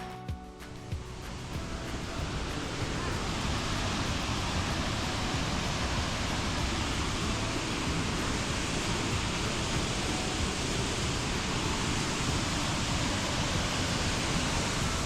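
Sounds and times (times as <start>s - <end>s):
rush of falling water: 0.0s - 15.0s.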